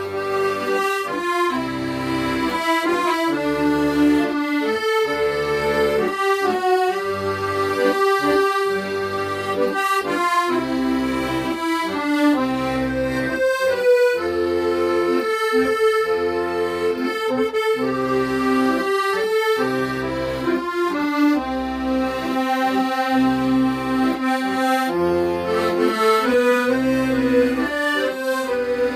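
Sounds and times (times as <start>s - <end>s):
accordion bass accompaniment: 0.0s - 28.9s
accordion melody: 0.0s - 28.9s.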